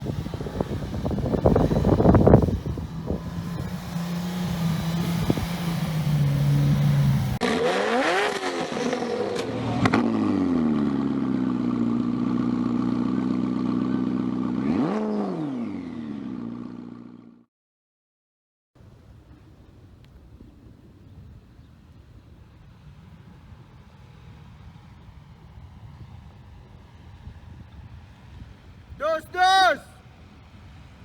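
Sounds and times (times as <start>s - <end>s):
suv engine revving: 0.0s - 12.8s, 14.4s - 16.1s.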